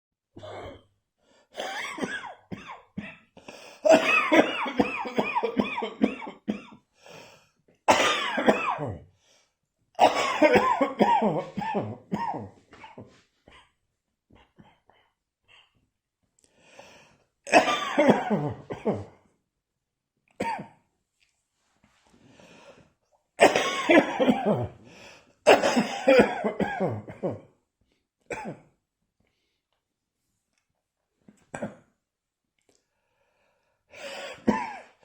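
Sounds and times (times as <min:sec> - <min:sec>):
person coughing: 0:00.4 - 0:00.9, 0:01.6 - 0:03.3, 0:03.9 - 0:06.8, 0:07.9 - 0:09.0, 0:10.0 - 0:13.2, 0:17.5 - 0:19.2, 0:20.4 - 0:20.8, 0:23.4 - 0:24.8, 0:25.5 - 0:27.5, 0:28.3 - 0:28.7, 0:34.1 - 0:35.0.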